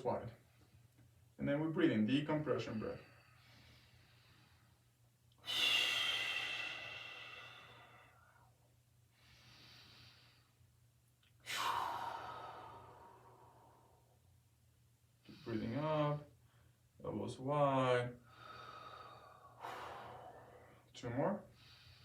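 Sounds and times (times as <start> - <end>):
person breathing deeply: 3.0 - 10.6, 11.4 - 14.2, 18.2 - 22.0.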